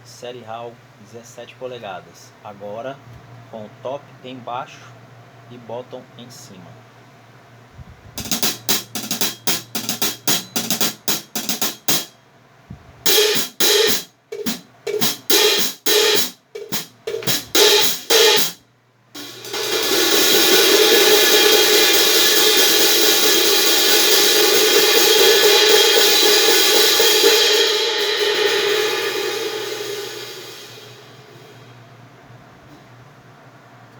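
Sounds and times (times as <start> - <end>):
hi-hat cymbals played: 8.2 - 12.2, 13.0 - 18.6, 19.2 - 32.1.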